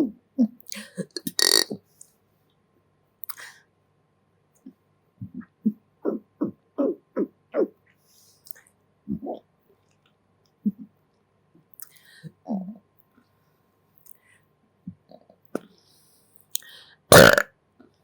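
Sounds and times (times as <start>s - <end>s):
person burping: 1.0s - 1.8s, 17.1s - 17.4s.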